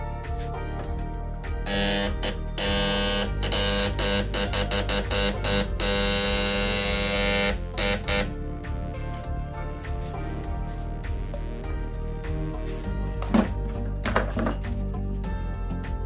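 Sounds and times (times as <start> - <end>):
background music: 0.0 - 16.0
loud electrical buzz: 1.6 - 8.4.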